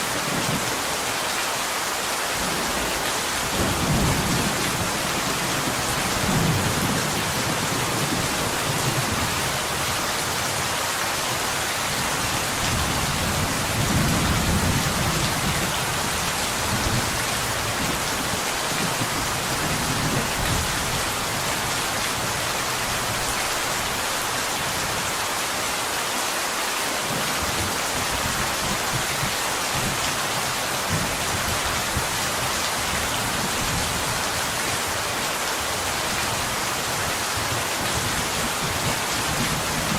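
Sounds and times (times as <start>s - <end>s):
thunder rumbling: 2.4s - 9.9s.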